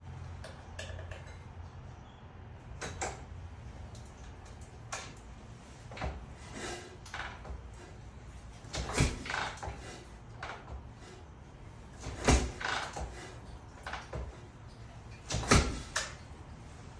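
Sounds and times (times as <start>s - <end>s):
knocks and clunks of handling: 0.3s - 1.8s, 11.9s - 16.8s.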